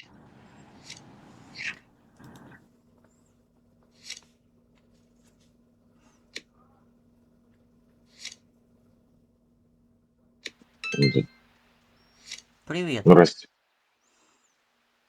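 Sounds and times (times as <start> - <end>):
faint steady hum: 0.0 - 3.9.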